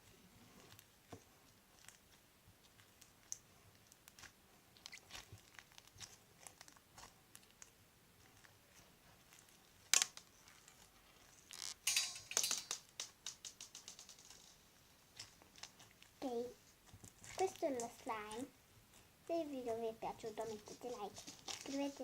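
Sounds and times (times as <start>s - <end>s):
crunchy slime crackling: 0.6s - 11.8s, 12.9s - 19.1s.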